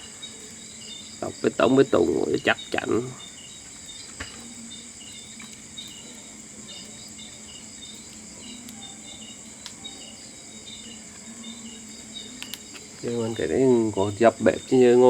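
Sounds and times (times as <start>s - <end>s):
insects chirping chorus: 0.0s - 15.0s
faint clicks: 9.6s - 9.8s, 12.3s - 13.2s.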